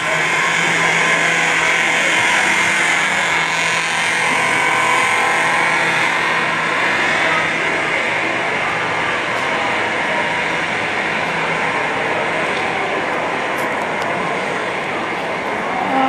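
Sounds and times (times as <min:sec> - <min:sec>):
fire alarm horn buzzing: 0:00.0 - 0:07.6.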